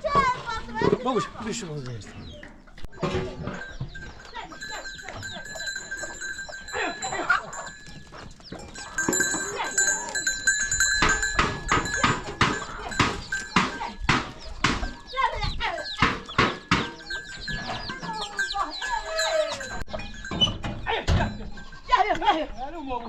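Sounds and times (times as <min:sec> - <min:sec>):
neck bells ringing: 0:02.9 - 0:22.8
sheep and goats bleating: 0:04.0 - 0:14.0, 0:16.8 - 0:20.3
sharp knocks: 0:11.0 - 0:15.0, 0:16.0 - 0:17.2.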